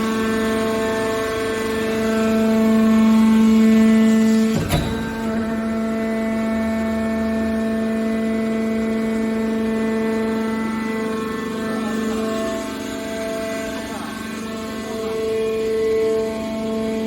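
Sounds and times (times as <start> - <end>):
hydraulic power unit humming: 0.0 - 17.0
sharp knock: 4.6 - 5.8.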